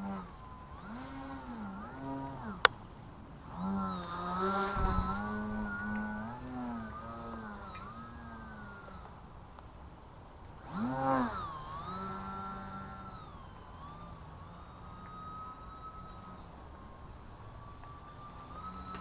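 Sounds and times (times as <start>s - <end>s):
rc plane motor buzzing whine: 0.0s - 19.0s.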